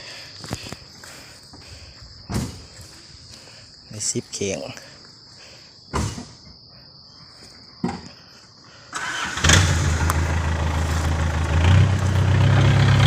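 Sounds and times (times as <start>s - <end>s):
crickets chirring: 0.0s - 13.0s
vehicle engine starting and idling: 8.9s - 13.0s.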